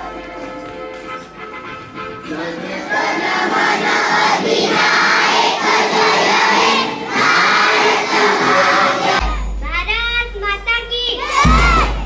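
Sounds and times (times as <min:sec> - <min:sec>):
children singing in unison: 0:02.3 - 0:09.6.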